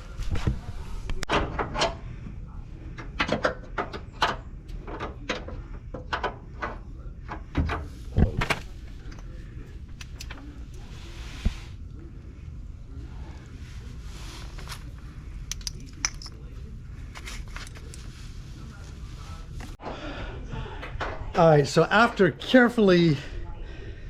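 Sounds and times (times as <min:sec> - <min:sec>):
metal parts and tools clanking: 0:15.4 - 0:18.1.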